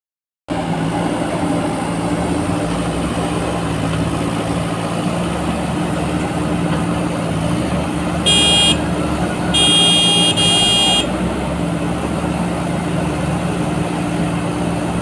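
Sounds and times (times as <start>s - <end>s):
diesel engine running: 0.5s - 15.0s.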